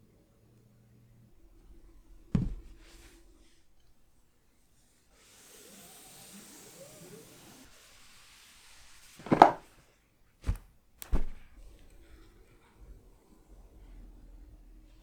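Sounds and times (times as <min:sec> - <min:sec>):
packaging rustling: 0:09.2 - 0:09.6.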